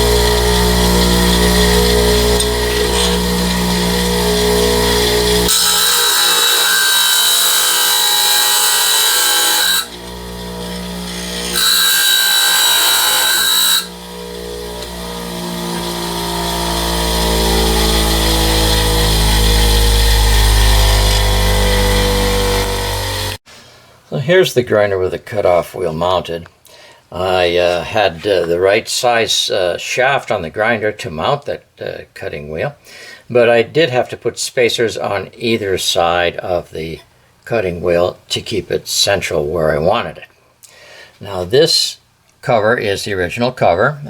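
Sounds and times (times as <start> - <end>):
grinder motor hum: 0.0 - 23.4
grinding screech on sheet metal: 0.0 - 23.4.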